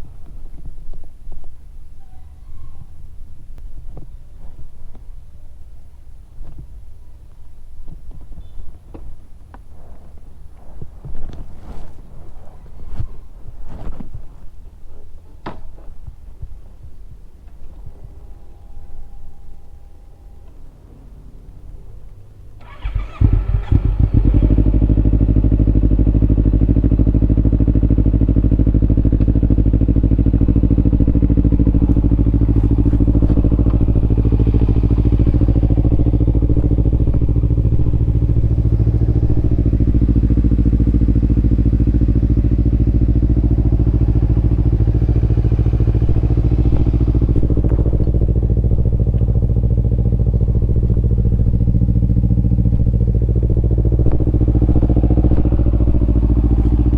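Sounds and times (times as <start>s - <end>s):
motorcycle engine starting and idling: 17.4s - 56.9s.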